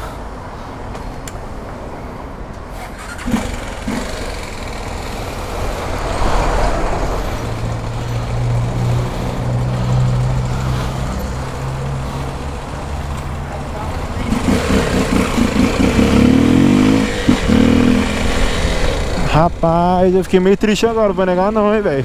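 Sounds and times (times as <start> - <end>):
traffic: 0.0 - 22.0
motorcycle engine running: 7.5 - 19.7.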